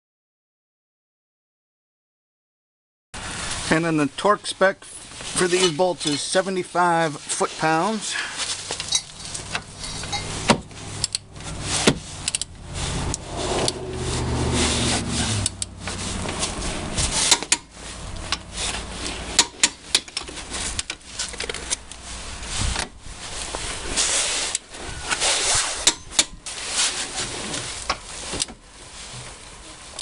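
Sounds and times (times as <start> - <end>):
low hum: 8.5 - 25.1
hand tools clicking and ratcheting: 8.8 - 11.5, 12.2 - 12.5, 15.3 - 22.0, 25.8 - 26.4.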